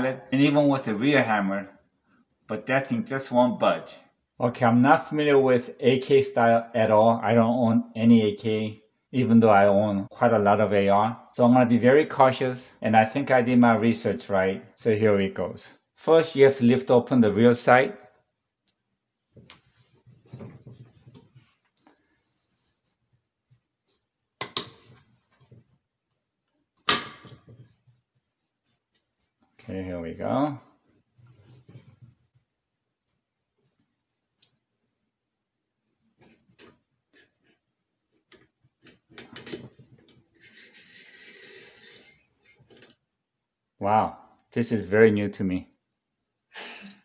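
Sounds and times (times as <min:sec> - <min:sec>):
metal parts rubbing on table: 0:40.3 - 0:42.9.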